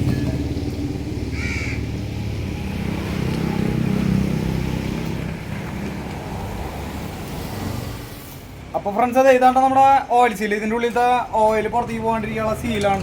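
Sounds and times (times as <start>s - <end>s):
engine rumbling: 0.0s - 13.0s
crow cawing: 1.3s - 2.0s.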